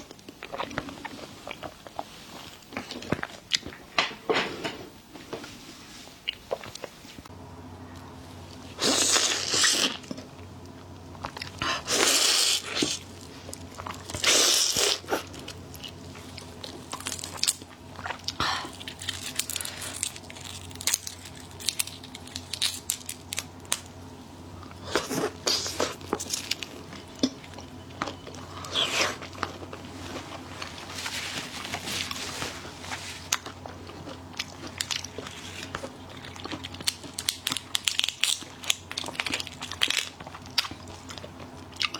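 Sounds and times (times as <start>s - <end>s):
low steady hum: 0.0s - 41.9s
crunching bites: 16.6s - 24.0s
wet chewing: 33.3s - 41.9s.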